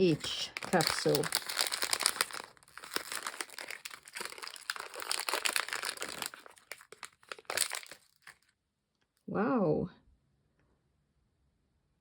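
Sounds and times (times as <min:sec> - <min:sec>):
plastic bag crinkling: 0:00.0 - 0:08.5.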